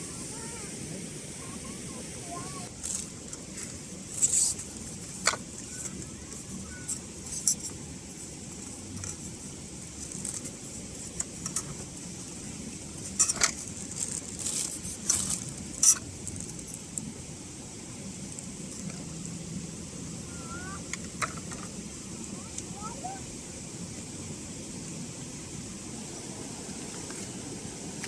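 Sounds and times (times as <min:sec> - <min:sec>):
low background noise: 0:00.0 - 0:28.0.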